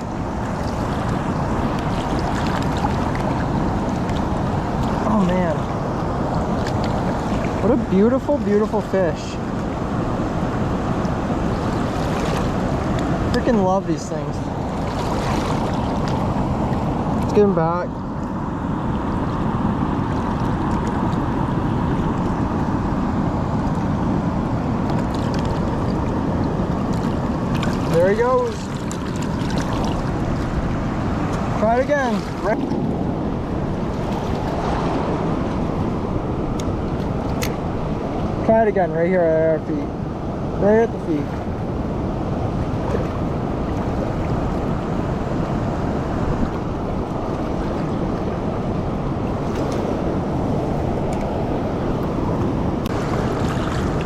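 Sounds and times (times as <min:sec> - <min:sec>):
water rushing through spillway: 0:00.0 - 0:17.8, 0:20.1 - 0:36.2, 0:40.6 - 0:54.0.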